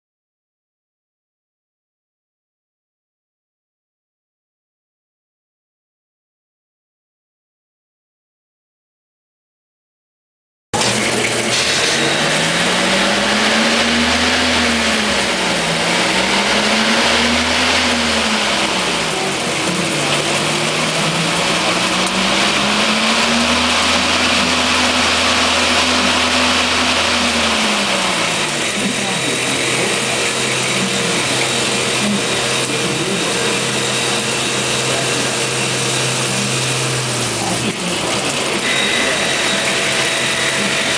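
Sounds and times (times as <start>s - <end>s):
milling machine running: 10.8s - 40.9s.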